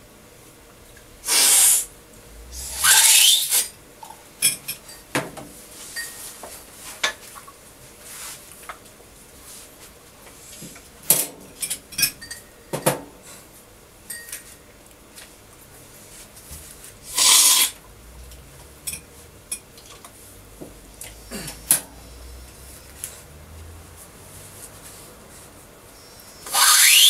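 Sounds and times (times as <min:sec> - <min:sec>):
spoons clinking against ceramic cups: 0:14.1 - 0:14.6.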